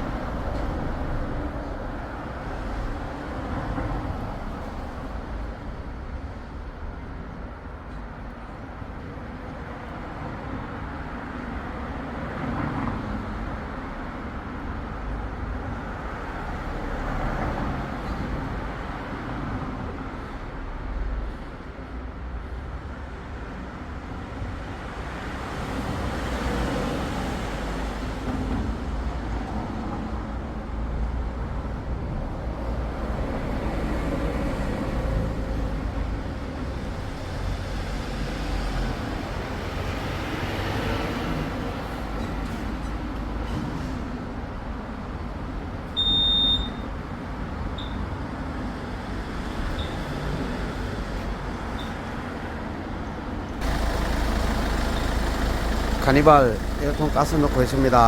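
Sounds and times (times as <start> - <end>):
road traffic rumble: 46.7 - 58.0.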